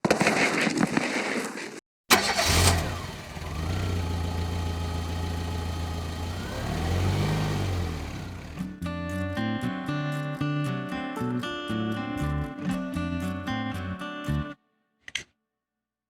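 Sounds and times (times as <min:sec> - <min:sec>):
engine starting and running: 0:02.1 - 0:08.8.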